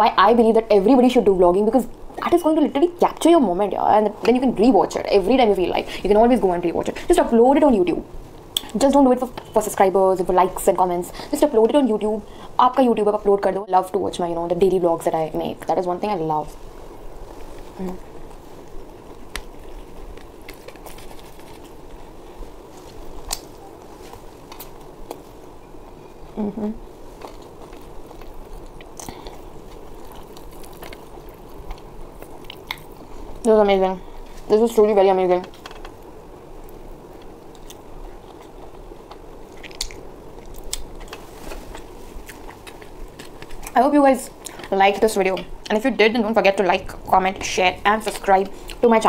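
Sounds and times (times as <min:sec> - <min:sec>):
low background hum: 0:00.0 - 0:49.0
mouth clicks and soft crunches: 0:26.4 - 0:33.4, 0:35.5 - 0:43.8
person chewing food: 0:27.0 - 0:33.1, 0:36.6 - 0:43.8.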